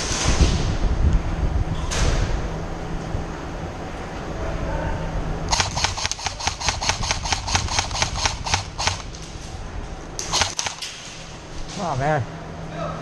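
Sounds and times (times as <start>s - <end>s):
airsoft gun firing: 5.5s - 9.2s, 10.2s - 11.0s.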